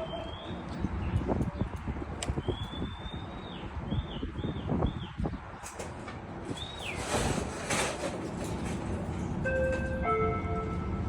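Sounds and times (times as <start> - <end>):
train low rumble: 6.0 - 11.0.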